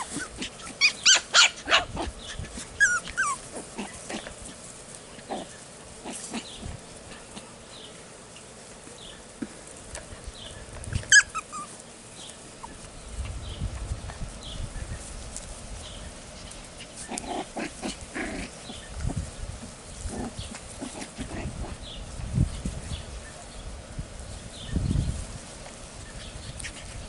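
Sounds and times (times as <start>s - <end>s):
puppies yipping and squealing: 0.0s - 4.5s, 10.6s - 11.8s, 12.5s - 12.9s.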